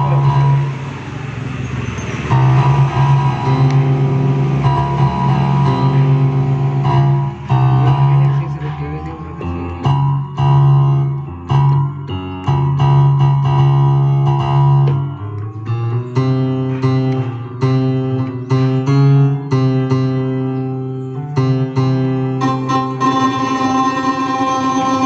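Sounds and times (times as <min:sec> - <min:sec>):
steady bass line: 0:00.0 - 0:00.8, 0:02.3 - 0:20.5
keyboard chords: 0:00.0 - 0:25.0
plucked guitar-like notes: 0:02.3 - 0:13.6, 0:22.4 - 0:25.0.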